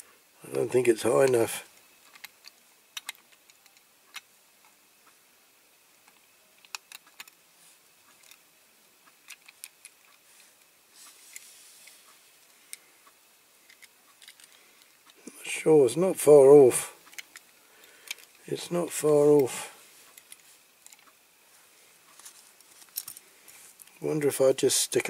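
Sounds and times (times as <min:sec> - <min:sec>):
soft rustle: 0:07.5 - 0:08.4, 0:09.4 - 0:13.0, 0:19.4 - 0:24.0.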